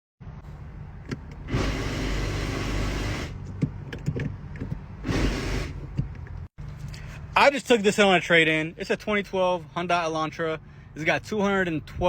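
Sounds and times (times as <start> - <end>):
loud rushing whir: 1.4 - 3.4.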